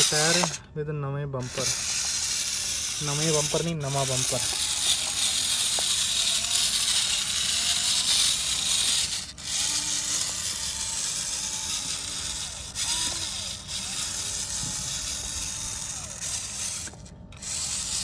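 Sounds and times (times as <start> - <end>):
small electric motor whirring: 0.0 - 0.6, 1.4 - 18.0.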